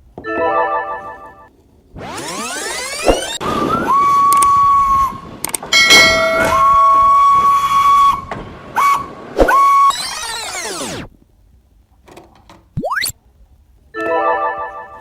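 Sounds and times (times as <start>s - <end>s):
train whistle tooting: 3.4s - 5.3s, 6.0s - 10.1s.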